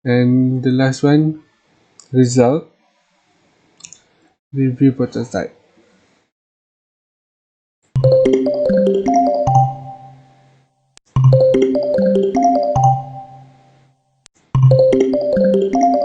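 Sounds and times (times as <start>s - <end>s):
keyboard melody over bass note: 11.2s - 13.6s.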